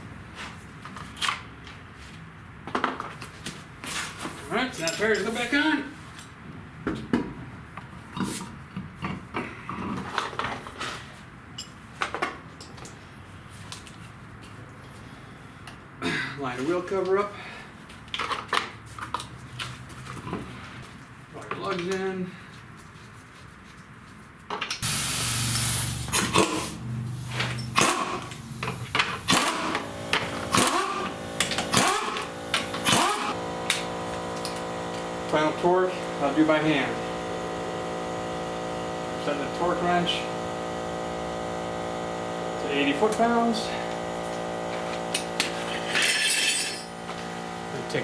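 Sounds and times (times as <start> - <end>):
power tool spinning lug nuts: 24.8 - 48.0.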